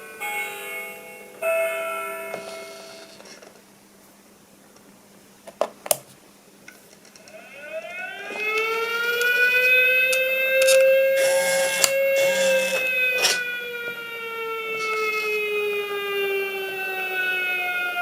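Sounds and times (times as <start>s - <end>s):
air-raid siren from small speaker: 7.2s - 18.0s.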